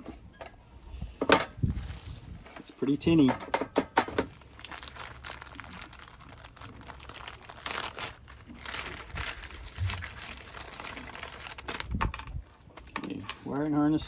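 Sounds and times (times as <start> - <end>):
plastic packaging crinkling: 4.2 - 13.5.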